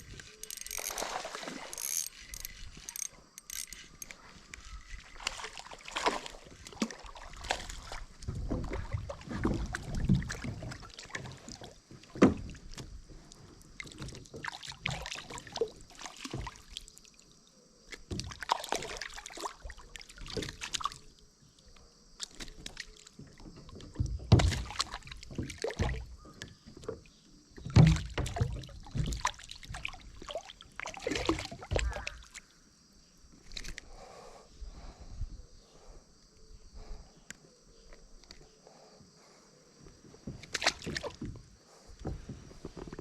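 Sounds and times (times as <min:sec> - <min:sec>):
water sloshing and splashing: 0:00.0 - 0:32.6, 0:33.3 - 0:34.0, 0:40.2 - 0:43.0.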